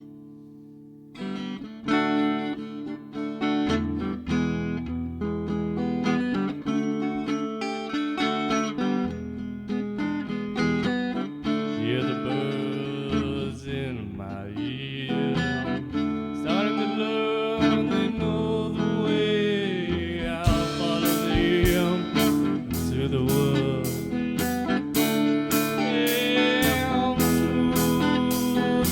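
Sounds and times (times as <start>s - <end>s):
picked guitar notes: 0.0s - 28.9s
bass guitar: 19.9s - 28.9s
drums: 20.2s - 28.9s.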